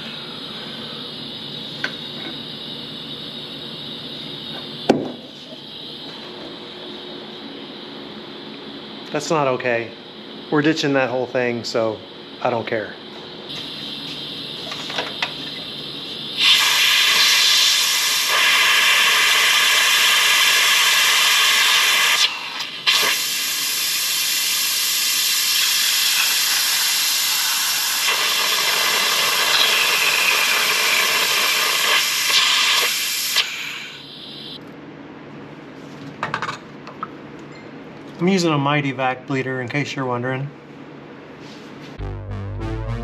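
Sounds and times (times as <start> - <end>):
compressed air hiss: 16.4 - 21.1.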